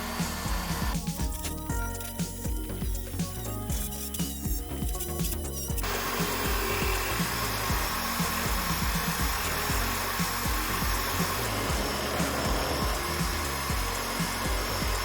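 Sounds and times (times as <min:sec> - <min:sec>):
background music with steady beat: 0:00.0 - 0:15.0
lathe spinning and whirring: 0:00.0 - 0:15.0
tool cutting into hard wood: 0:05.2 - 0:15.0.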